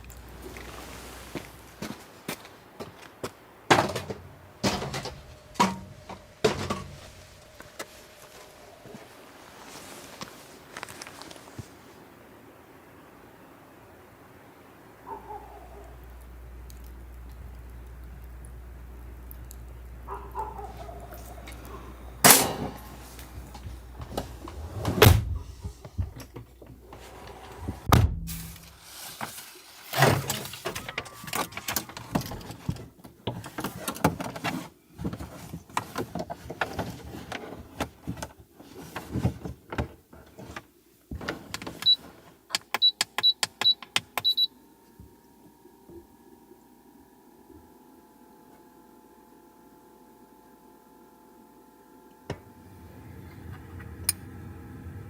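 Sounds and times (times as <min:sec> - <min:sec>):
objects thumping: 0:03.7 - 0:07.6, 0:27.7 - 0:29.4
low hum: 0:03.8 - 0:10.1, 0:14.2 - 0:28.9, 0:44.4 - 0:55.0.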